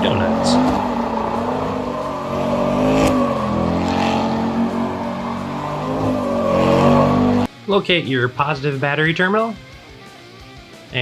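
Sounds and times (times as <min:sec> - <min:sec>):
truck engine revving: 0:00.0 - 0:07.5.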